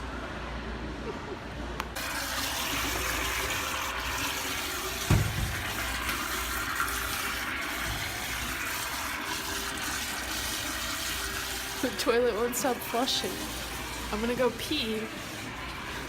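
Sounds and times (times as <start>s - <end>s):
toilet flushing: 2.0s - 16.0s
low thump: 5.1s - 5.8s.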